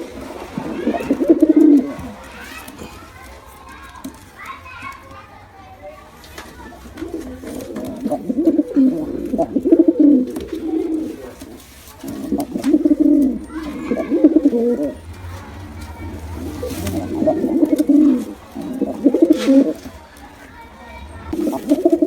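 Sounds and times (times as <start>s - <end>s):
pigeons cooing: 0.0s - 2.3s, 6.7s - 22.0s.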